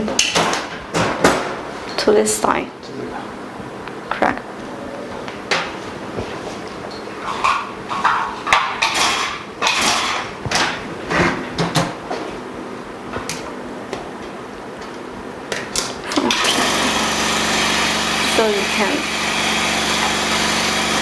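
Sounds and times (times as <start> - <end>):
vacuum pump motor humming: 8.8 - 21.0.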